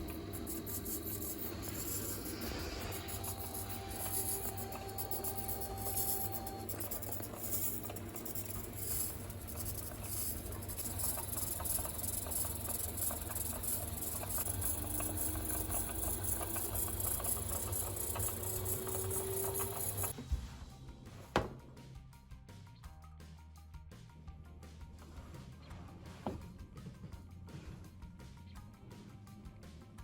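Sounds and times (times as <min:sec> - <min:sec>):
low hum: 0:00.0 - 0:11.0
faint motor whine: 0:00.0 - 0:21.8.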